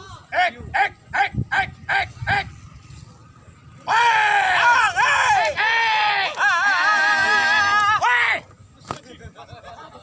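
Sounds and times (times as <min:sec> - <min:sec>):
long wavering yell: 0:03.8 - 0:08.4
person shouting: 0:03.9 - 0:08.4.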